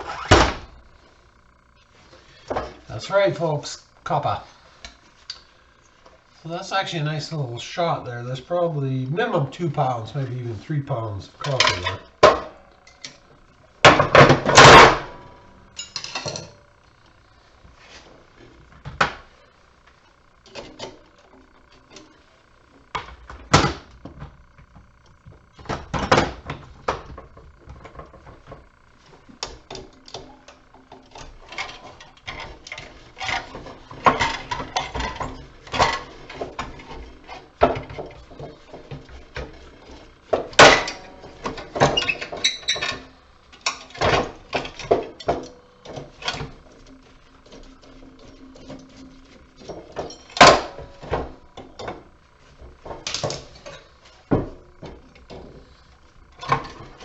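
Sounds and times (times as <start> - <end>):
metal parts clanking and rattling: 11.4 - 13.2, 13.8 - 16.7, 29.6 - 57.0.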